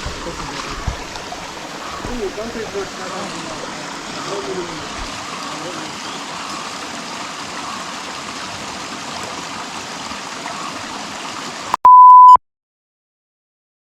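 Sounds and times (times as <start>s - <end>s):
stream water flowing: 0.0s - 11.8s
electronic beep: 11.8s - 12.4s.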